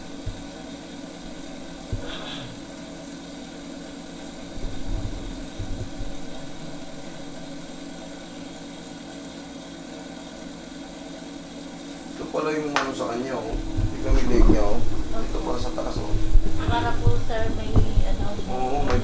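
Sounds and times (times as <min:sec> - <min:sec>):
low rumbling knocks: 0:00.0 - 0:09.0, 0:12.8 - 0:19.0
machine hum: 0:00.0 - 0:19.0.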